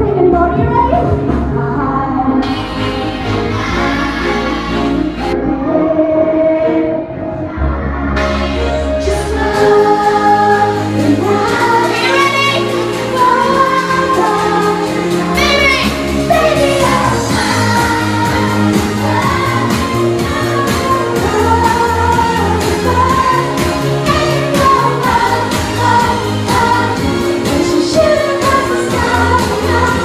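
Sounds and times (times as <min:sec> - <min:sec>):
woman singing pop song: 0:00.0 - 0:03.6, 0:05.3 - 0:30.0
backing track with beat and bass: 0:08.1 - 0:30.0.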